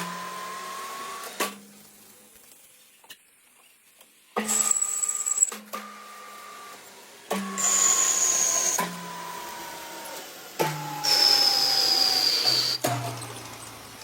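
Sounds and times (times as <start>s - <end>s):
machine motor whine: 4.5s - 14.0s
hissing cutting noise: 11.0s - 12.9s.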